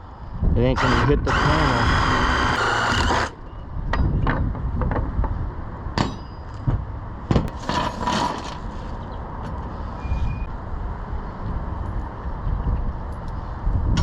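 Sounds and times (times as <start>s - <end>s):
tools and metal hardware clanking: 6.0s - 6.7s.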